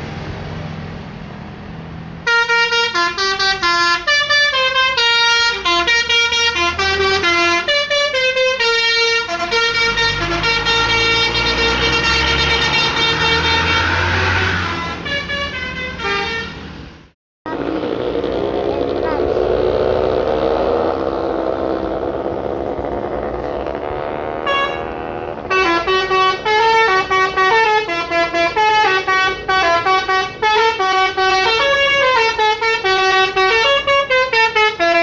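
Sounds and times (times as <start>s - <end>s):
bus engine low rumble: 0.0s - 35.0s
musical bus horn: 2.2s - 16.9s, 23.2s - 35.0s.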